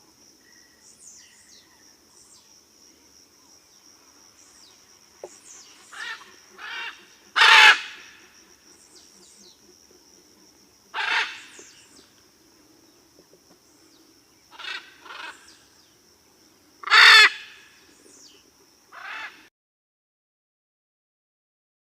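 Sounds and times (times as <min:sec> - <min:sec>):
macaw squawking: 0:05.9 - 0:08.3, 0:10.9 - 0:11.7, 0:14.5 - 0:15.5, 0:16.8 - 0:17.6, 0:18.9 - 0:19.5.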